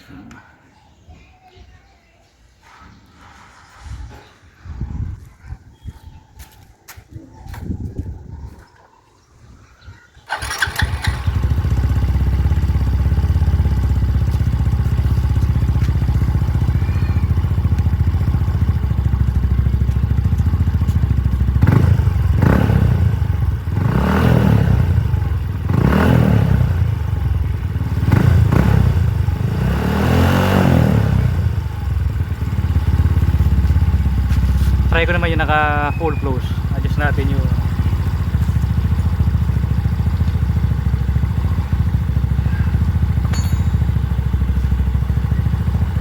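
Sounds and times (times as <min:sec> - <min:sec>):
scooter engine idling and revving: 0:10.2 - 0:46.0.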